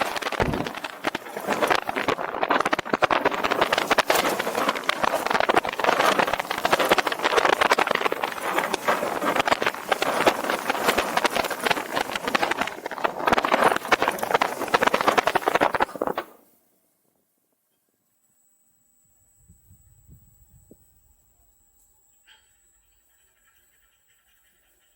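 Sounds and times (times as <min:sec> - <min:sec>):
rushing air: 0:00.0 - 0:16.2
roller coaster wheels clattering: 0:00.0 - 0:16.4.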